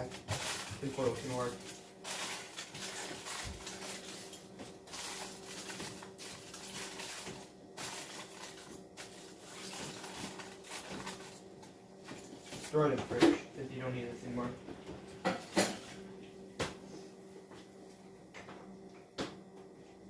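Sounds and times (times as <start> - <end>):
aluminium foil crinkling: 0.0 - 11.5
steady low hum: 0.0 - 20.0.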